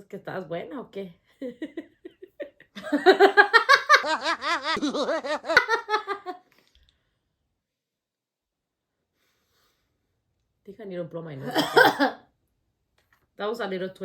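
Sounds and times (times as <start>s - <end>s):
woman giggling: 1.4s - 6.4s
woman laughing hard: 1.4s - 6.4s.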